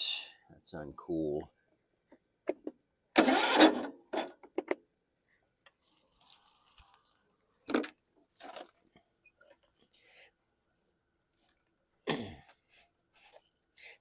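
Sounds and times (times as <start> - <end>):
starter cranking engine: 3.2 - 3.9.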